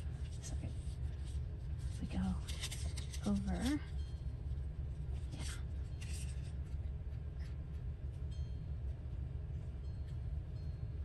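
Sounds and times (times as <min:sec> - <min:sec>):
steady low hum: 0:00.0 - 0:11.0
paper rustling and scraping: 0:00.2 - 0:03.9, 0:05.2 - 0:06.8.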